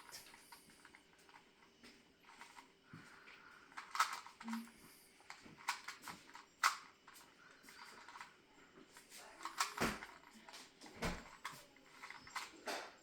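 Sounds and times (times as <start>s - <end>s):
puzzle cube plastic clicks: 3.7s - 4.7s, 9.4s - 10.3s.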